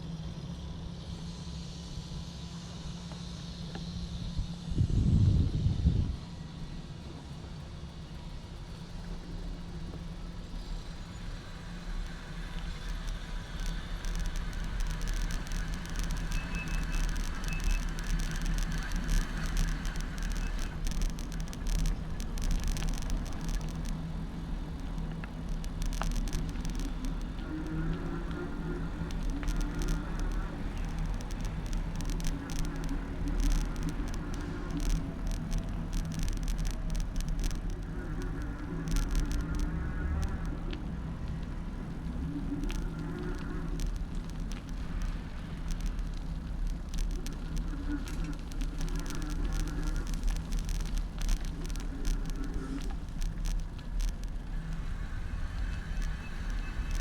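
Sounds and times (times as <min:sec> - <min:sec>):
wind and road rumble: 0:03.8 - 0:57.0
bike rattling and clicking: 0:28.0 - 0:40.7.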